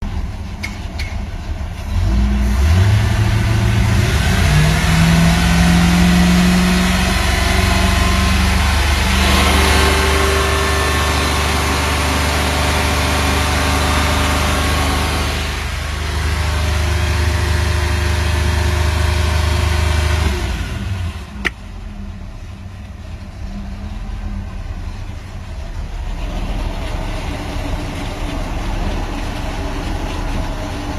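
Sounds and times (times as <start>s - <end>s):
boat engine running: 0.0s - 30.9s
sharp click: 0.6s - 1.2s.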